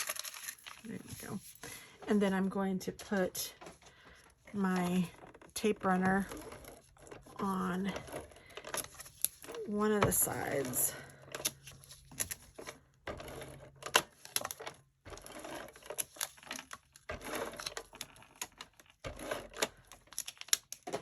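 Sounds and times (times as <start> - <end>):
paper and card crackling: 0.0 - 2.4.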